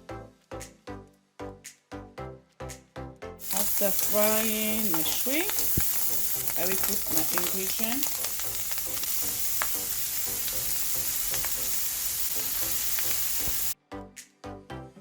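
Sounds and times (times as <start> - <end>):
food sizzling in oil: 3.4 - 13.8
music with drums: 3.4 - 13.8.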